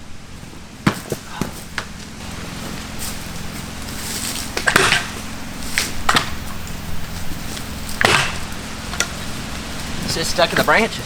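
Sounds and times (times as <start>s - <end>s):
low hum: 0.0s - 11.0s
woody cracks and knocks: 4.3s - 6.5s.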